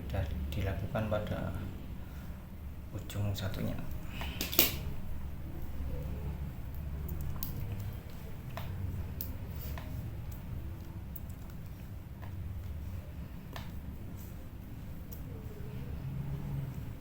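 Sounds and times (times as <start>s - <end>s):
low steady hum: 0.0s - 17.0s
small clicks and taps of tools: 4.2s - 4.8s, 6.7s - 12.8s, 13.5s - 13.8s.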